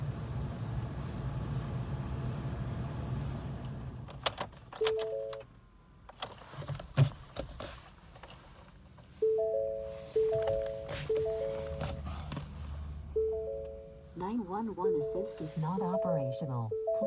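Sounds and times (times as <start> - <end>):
dashboard warning chime: 4.8 - 5.5, 9.1 - 12.3, 13.0 - 17.0.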